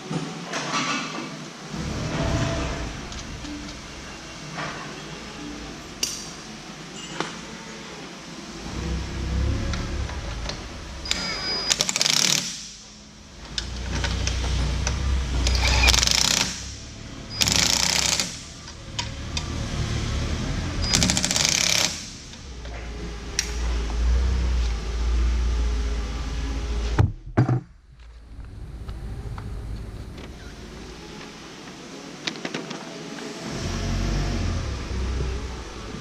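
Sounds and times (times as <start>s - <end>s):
low steady rumble: 8.3s - 11.1s, 22.2s - 31.5s
tool rattling driving fasteners: 11.1s - 12.8s, 13.5s - 19.1s, 20.8s - 22.4s.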